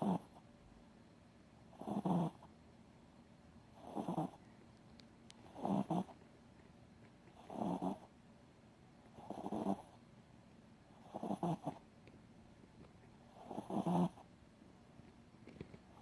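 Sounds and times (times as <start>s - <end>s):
dog snoring: 0.0s - 0.4s, 1.7s - 2.5s, 3.8s - 4.4s, 5.5s - 6.2s, 7.3s - 8.1s, 9.1s - 10.0s, 11.0s - 11.8s, 13.3s - 14.3s.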